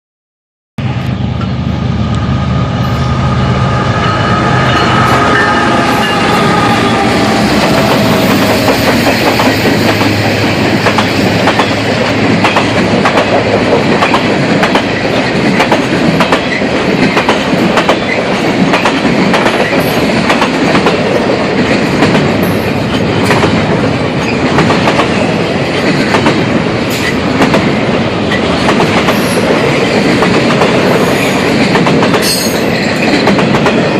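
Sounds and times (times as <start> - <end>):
freight cars rumbling: 0.8 - 14.1
diesel locomotive engines droning: 0.8 - 33.9.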